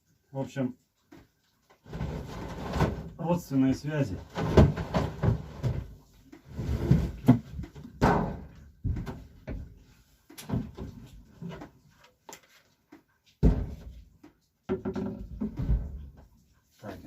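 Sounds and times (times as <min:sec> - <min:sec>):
knocks and bumps on hutch: 0:04.2 - 0:06.0, 0:06.8 - 0:09.8, 0:13.4 - 0:14.1, 0:14.7 - 0:16.2.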